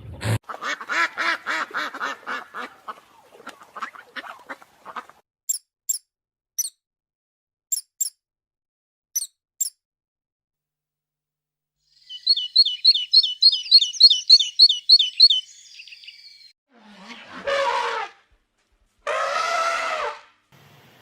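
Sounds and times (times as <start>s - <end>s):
bird chirping: 11.9s - 16.5s.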